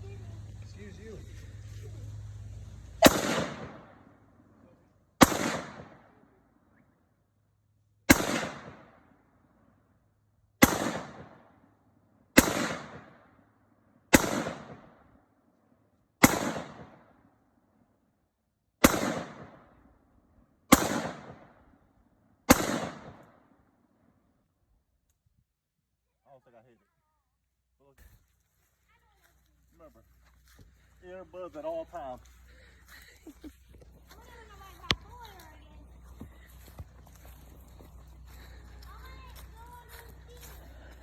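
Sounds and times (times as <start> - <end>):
rifle shots with echo: 3.0 - 4.1, 5.2 - 6.2, 8.1 - 9.1, 10.6 - 11.6, 12.4 - 13.3, 14.1 - 15.0, 16.2 - 17.2, 18.8 - 19.8, 20.7 - 21.7, 22.5 - 23.5.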